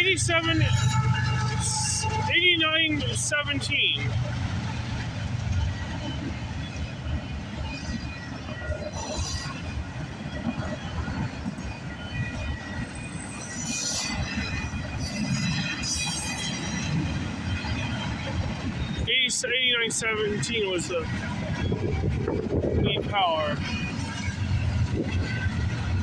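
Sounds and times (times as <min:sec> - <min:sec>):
train cars rolling on rails: 0:00.0 - 0:26.0
wheel squeals: 0:07.7 - 0:19.1.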